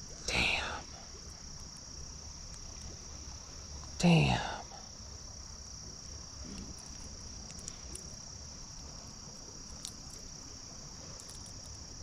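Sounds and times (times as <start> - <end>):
crickets chirping: 0.0 - 12.0
faint clicks: 1.2 - 2.9, 6.4 - 8.1, 9.3 - 10.3.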